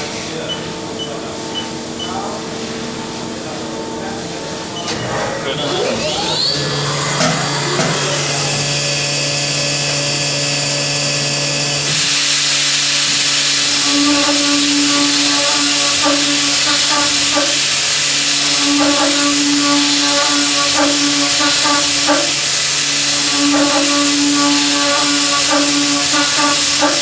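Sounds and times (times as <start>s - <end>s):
milling machine hum and whine: 0.0s - 27.0s
loud even hiss: 11.8s - 27.0s.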